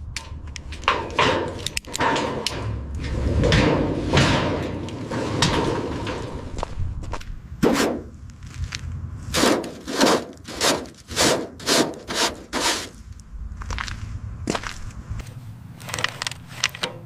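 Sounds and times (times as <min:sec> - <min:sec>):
hand tool scraping a surface: 0:09.3 - 0:13.0.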